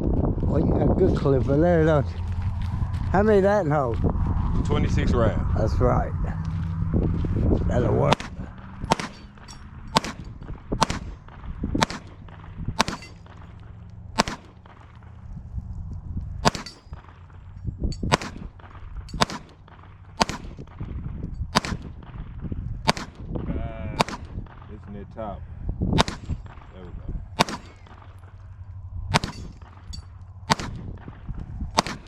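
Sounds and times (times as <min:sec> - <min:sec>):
pistol shots: 0:08.0 - 0:13.6, 0:14.2 - 0:15.1, 0:16.4 - 0:24.9, 0:25.9 - 0:32.0.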